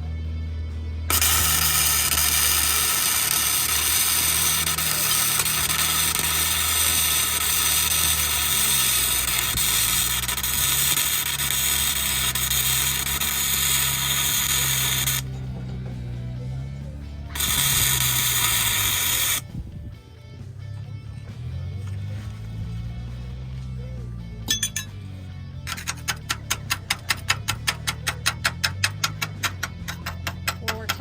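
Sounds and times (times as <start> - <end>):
music playing: 0.0 - 31.0
welder arc crackling and hissing: 1.1 - 15.5, 17.2 - 19.7, 25.7 - 31.0.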